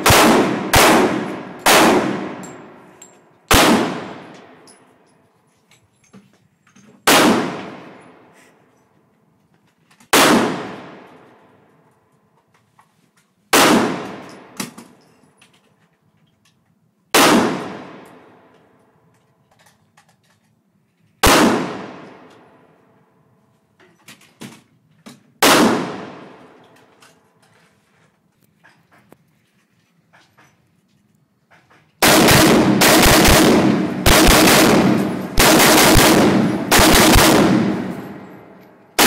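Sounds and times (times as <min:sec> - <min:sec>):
gunshots with echo: 0:00.0 - 0:02.9, 0:03.5 - 0:04.7, 0:07.1 - 0:08.0, 0:10.2 - 0:11.2, 0:13.6 - 0:14.6, 0:17.2 - 0:18.4, 0:21.2 - 0:22.3, 0:25.4 - 0:26.5, 0:32.0 - 0:39.0
faint clicks and knocks: 0:14.7 - 0:16.8, 0:18.5 - 0:21.2, 0:26.6 - 0:32.0.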